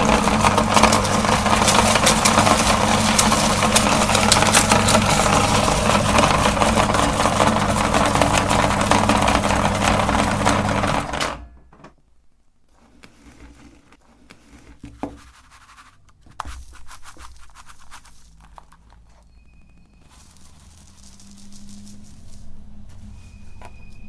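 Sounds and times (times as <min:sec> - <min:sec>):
crackling and rustling: 0:00.0 - 0:11.2, 0:12.6 - 0:24.0
electric meat grinder motor hum: 0:00.0 - 0:11.4.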